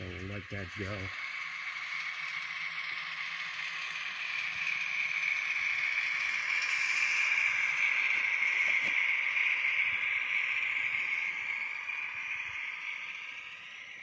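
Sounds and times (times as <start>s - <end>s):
turbine hissing rush from speaker: 0.0s - 14.0s.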